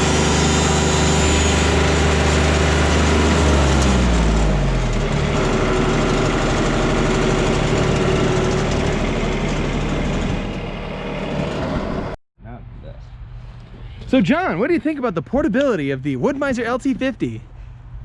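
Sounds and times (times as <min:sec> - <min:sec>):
engine running loudly: 0:00.0 - 0:12.2.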